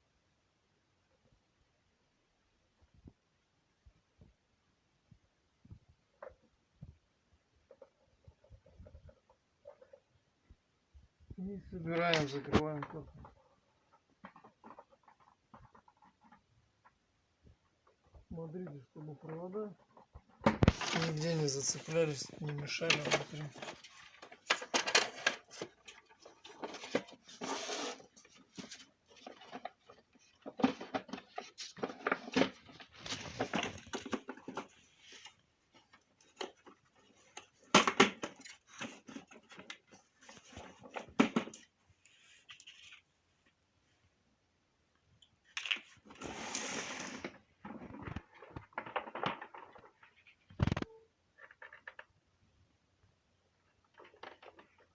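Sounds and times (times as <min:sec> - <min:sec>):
plastic parts clicking and scraping: 0:11.7 - 0:43.6, 0:45.2 - 0:52.3, 0:53.5 - 0:54.9.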